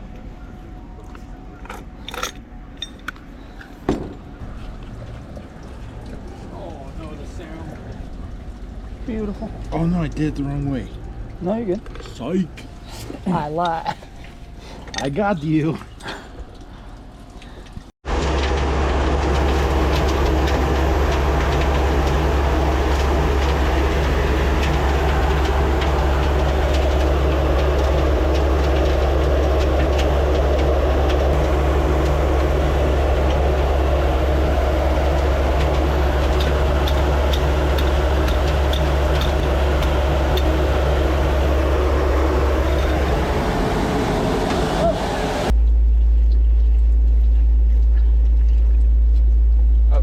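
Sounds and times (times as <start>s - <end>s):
engine running steadily: 17.6s - 50.0s.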